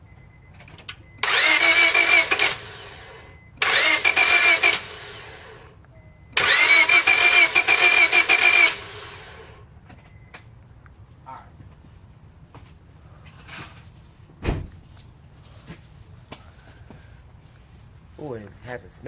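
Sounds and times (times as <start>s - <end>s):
starter motor cranking engine: 1.2s - 5.7s, 6.4s - 9.6s.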